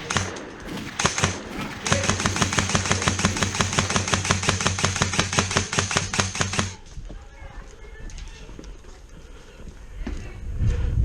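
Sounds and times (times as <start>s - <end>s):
airsoft rifle shots: 0.0s - 6.8s.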